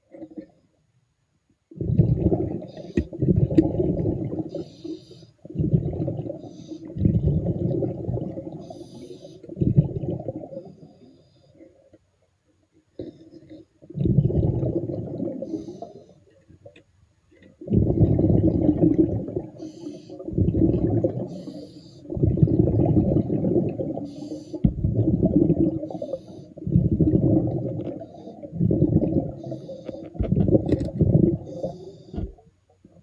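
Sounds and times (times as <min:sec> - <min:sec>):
exhaled bubbles rumbling: 0:01.7 - 0:10.9, 0:13.0 - 0:16.1, 0:17.5 - 0:32.4
regulator inhalation hiss: 0:04.5 - 0:05.4, 0:08.6 - 0:09.4, 0:19.6 - 0:20.2, 0:21.3 - 0:22.1, 0:24.0 - 0:24.6, 0:25.9 - 0:26.6, 0:29.4 - 0:30.2, 0:31.5 - 0:32.2.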